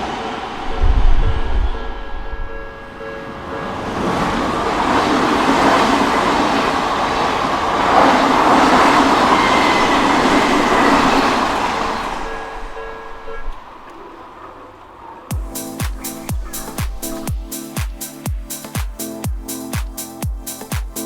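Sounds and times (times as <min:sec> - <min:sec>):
train passing close: 0:00.0 - 0:21.0
crossing bell ringing: 0:01.8 - 0:07.1.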